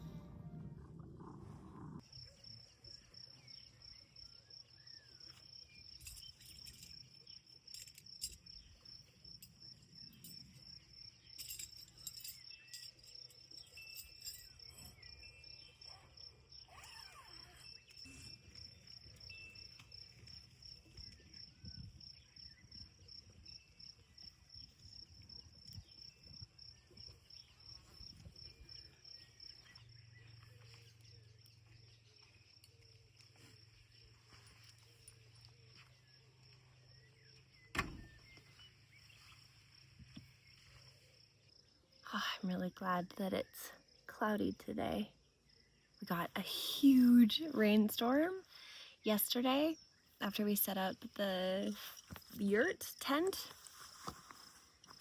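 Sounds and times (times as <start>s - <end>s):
insect chirping: 1.2s - 42.1s, 44.9s - 55.0s
faint bird chirps: 10.1s - 47.8s.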